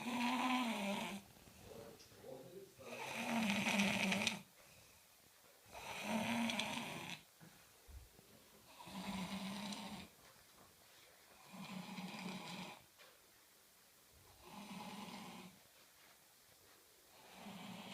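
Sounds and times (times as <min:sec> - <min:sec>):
person snoring: 0:00.0 - 0:01.2, 0:02.8 - 0:04.4, 0:05.7 - 0:07.2, 0:08.7 - 0:10.1, 0:11.4 - 0:12.8, 0:14.4 - 0:15.6, 0:17.2 - 0:17.9
quiet breathing: 0:00.0 - 0:10.2, 0:14.2 - 0:17.9.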